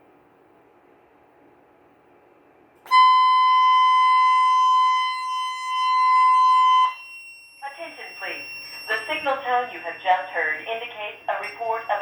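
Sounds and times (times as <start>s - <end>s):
steady high alarm tone: 2.9s - 12.0s.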